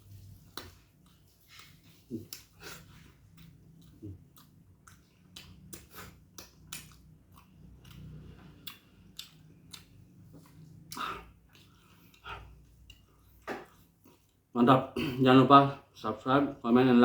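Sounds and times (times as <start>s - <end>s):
wet chewing and crunching: 0.0s - 14.5s.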